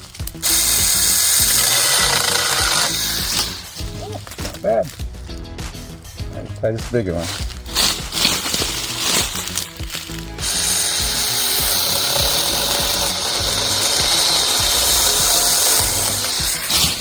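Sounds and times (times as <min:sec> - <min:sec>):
electric chainsaw cutting branch: 0:00.0 - 0:05.0, 0:07.3 - 0:17.0
handling knocks: 0:01.4 - 0:10.5.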